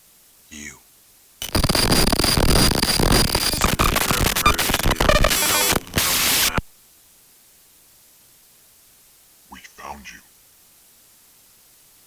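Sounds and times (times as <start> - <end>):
harsh electronic static: 1.4 - 6.7.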